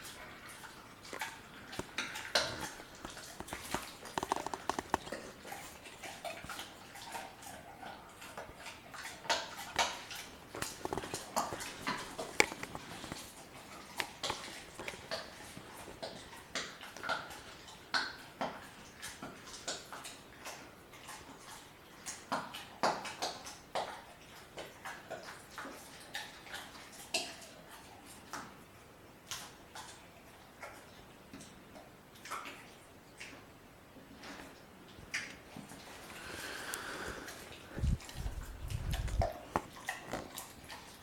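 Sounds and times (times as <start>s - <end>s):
dog chewing bone: 0.0s - 28.4s, 34.2s - 41.0s
bone crunching: 10.5s - 13.2s.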